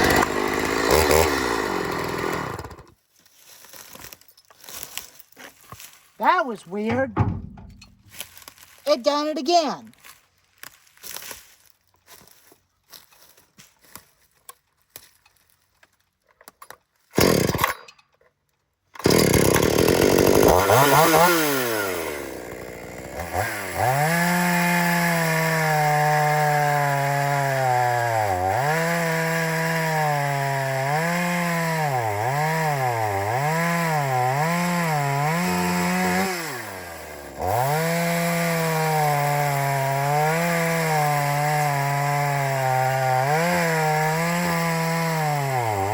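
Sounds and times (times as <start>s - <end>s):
chainsaw cutting log: 0.0s - 3.0s, 6.2s - 9.9s, 17.2s - 17.9s, 19.0s - 45.9s.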